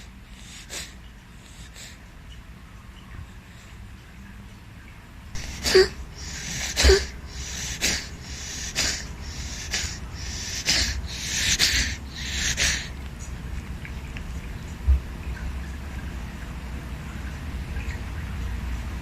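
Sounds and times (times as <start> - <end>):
pet wheezing hacking breaths: 0.0 - 2.2, 5.4 - 14.2.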